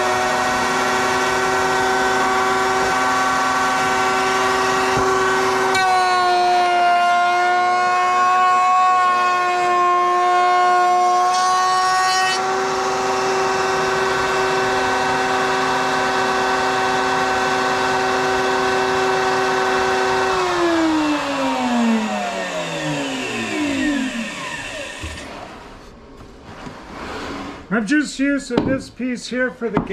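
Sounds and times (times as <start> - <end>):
power tool motor whining: 0.0 - 6.6, 11.2 - 25.8.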